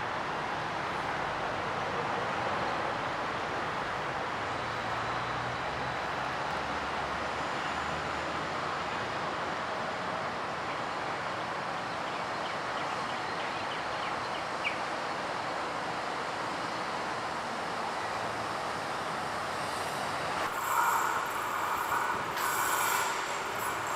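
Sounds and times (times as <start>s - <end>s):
train rushing: 15.9s - 23.9s.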